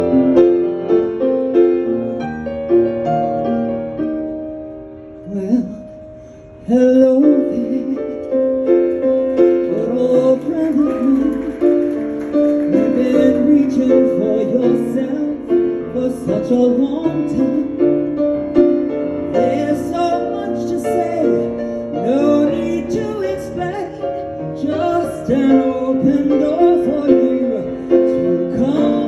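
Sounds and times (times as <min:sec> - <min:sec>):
slow piano chords: 0:00.0 - 0:29.0
woman singing: 0:09.6 - 0:12.0, 0:12.6 - 0:17.9, 0:19.4 - 0:29.0.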